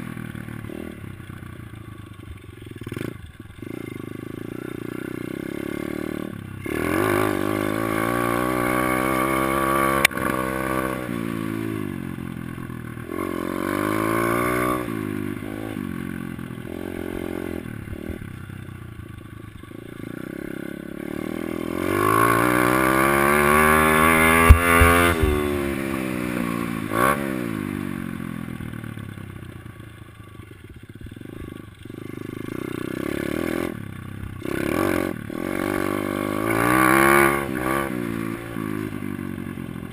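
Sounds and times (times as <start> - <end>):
motorcycle engine revving: 0.0 - 39.9
sharp knocks: 24.4 - 25.4.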